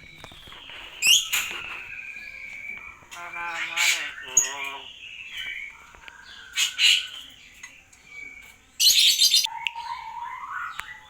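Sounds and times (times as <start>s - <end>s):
myna bird squawking: 2.8s - 5.6s
soft whistled bird notes: 5.2s - 11.0s.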